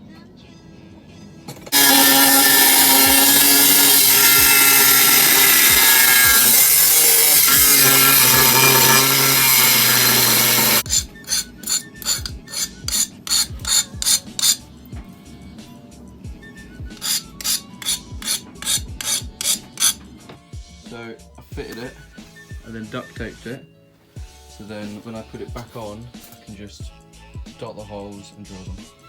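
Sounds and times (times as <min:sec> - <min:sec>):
angle grinder cutting steel: 0:01.7 - 0:14.6, 0:16.9 - 0:20.0
file rasping steel: 0:01.7 - 0:14.6, 0:16.9 - 0:20.0.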